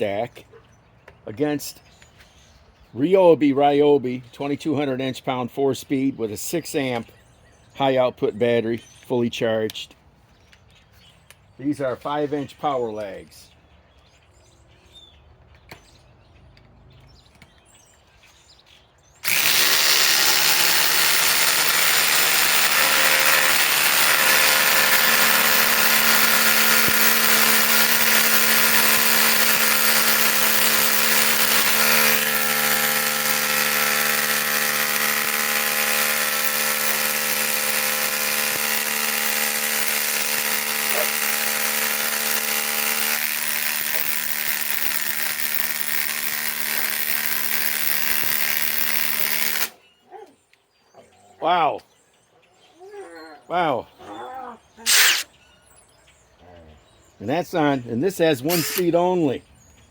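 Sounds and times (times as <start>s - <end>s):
impact driver hammering screw: 19.2s - 49.7s, 54.9s - 55.3s, 58.5s - 58.9s.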